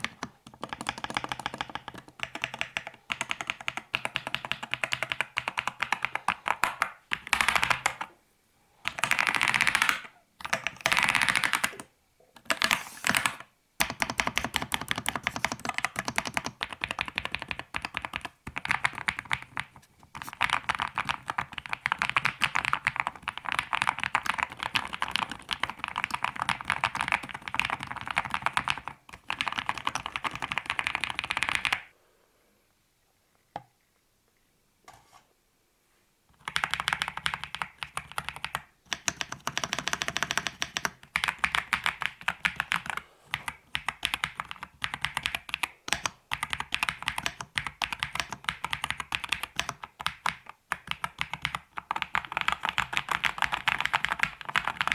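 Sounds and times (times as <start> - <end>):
mechanical keyboard typing: 0.0 - 8.1, 8.8 - 31.9, 36.4 - 54.9.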